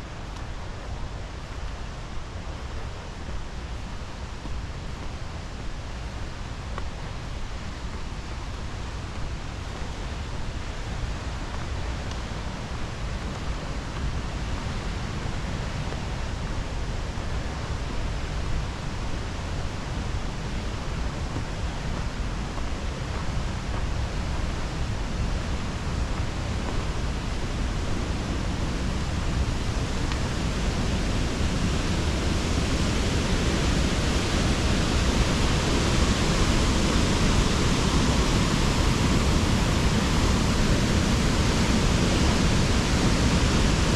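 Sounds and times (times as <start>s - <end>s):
waterfall rushing: 19.6s - 43.9s.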